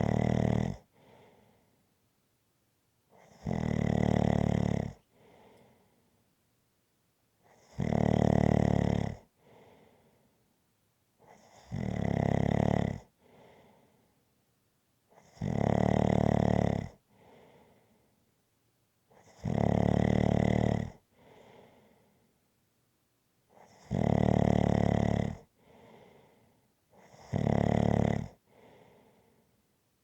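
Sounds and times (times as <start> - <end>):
loud drawn-out snoring: 0.0 - 1.2, 3.2 - 5.5, 7.5 - 9.7, 11.3 - 13.6, 15.2 - 17.4, 19.2 - 21.7, 23.6 - 26.2, 27.0 - 29.1
soft breath: 0.8 - 1.8, 5.0 - 6.2, 9.4 - 10.4, 13.2 - 14.2, 17.1 - 18.2, 21.1 - 22.4, 25.5 - 27.1, 28.4 - 29.6.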